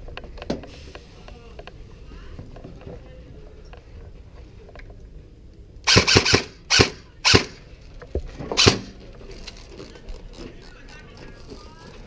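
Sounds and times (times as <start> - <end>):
sharp loud cracks: 5.9 - 7.6, 8.6 - 9.0.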